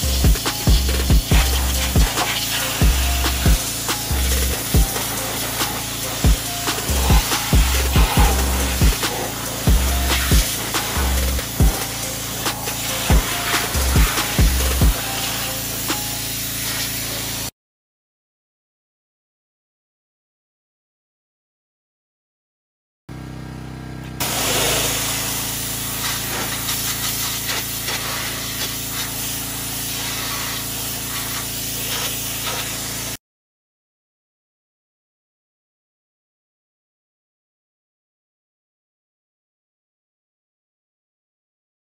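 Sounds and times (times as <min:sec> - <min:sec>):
background music with kick drum: 0:00.0 - 0:16.6
pressure washer spray hissing: 0:00.0 - 0:17.5, 0:24.2 - 0:33.2.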